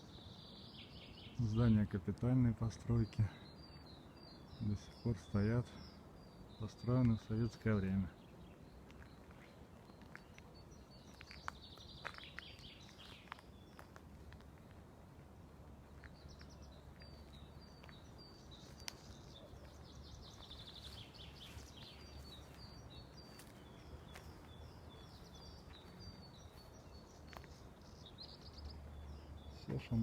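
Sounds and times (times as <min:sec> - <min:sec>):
low steady background noise: 0:00.0 - 0:30.0
small birds chirping: 0:00.0 - 0:30.0.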